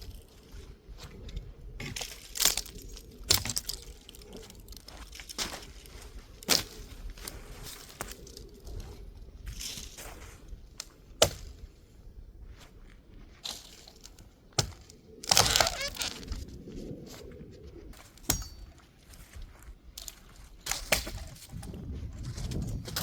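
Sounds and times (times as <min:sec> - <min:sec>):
branches crunching and crackling: 0:00.0 - 0:11.8, 0:12.4 - 0:17.3, 0:18.0 - 0:23.0
dry branches snapping: 0:01.8 - 0:08.5, 0:10.8 - 0:11.7, 0:13.4 - 0:16.5, 0:18.0 - 0:18.8, 0:20.0 - 0:21.7.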